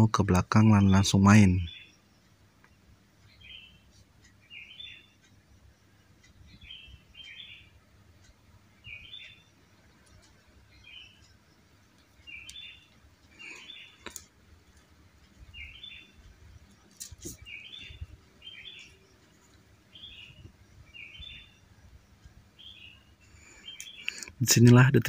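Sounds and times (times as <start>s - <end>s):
bird chirping: 0.0s - 25.0s
faint sharp clicks: 9.1s - 17.6s, 23.4s - 24.8s.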